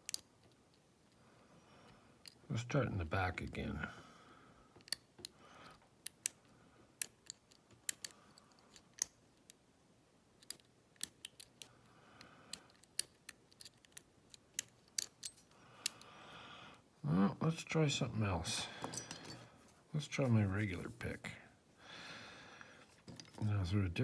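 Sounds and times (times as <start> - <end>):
lock pick metallic clicks: 0.0 - 0.8, 4.8 - 5.4, 7.0 - 9.6, 10.4 - 11.8, 12.5 - 16.1.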